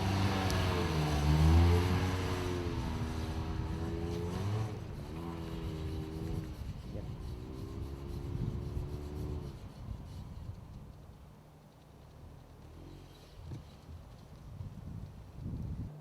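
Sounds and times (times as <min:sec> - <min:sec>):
car engine pulling under load: 0:00.0 - 0:06.8.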